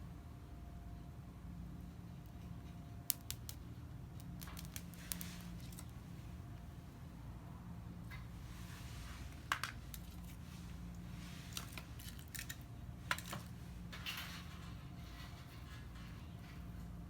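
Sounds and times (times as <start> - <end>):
steady low hum: 0.0 - 17.0
small hard objects clinking: 4.2 - 5.9, 11.4 - 14.7.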